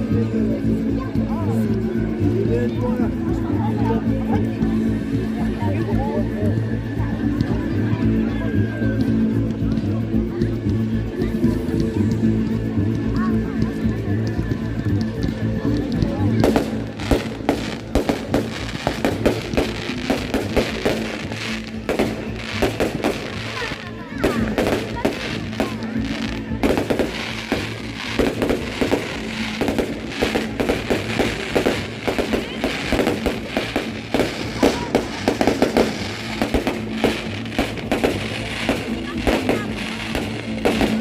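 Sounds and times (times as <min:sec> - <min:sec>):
background music: 0:00.0 - 0:41.0
fireworks bursting and crackling: 0:11.2 - 0:41.0.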